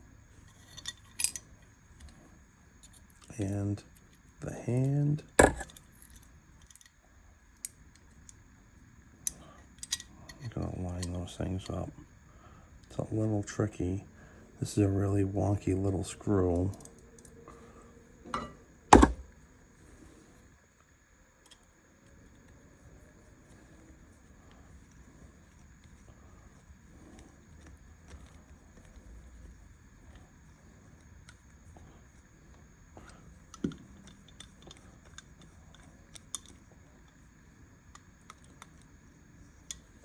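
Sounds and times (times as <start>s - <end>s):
metal clicks of revolver parts: 9.3s - 11.8s
knocks on a workbench: 18.4s - 19.2s.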